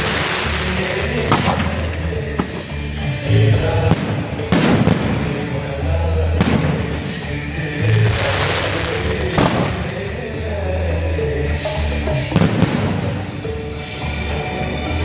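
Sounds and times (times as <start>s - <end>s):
firework bangs: 0.0s - 3.1s, 3.8s - 5.8s, 6.4s - 10.3s, 12.3s - 13.4s
firework crackling: 0.0s - 10.4s
loud music with bass line: 0.0s - 15.0s.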